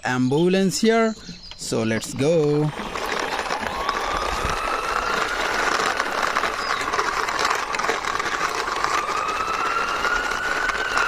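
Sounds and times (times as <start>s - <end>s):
plastic toy wheels rattling: 1.3s - 11.0s
toy siren wailing: 2.7s - 11.0s.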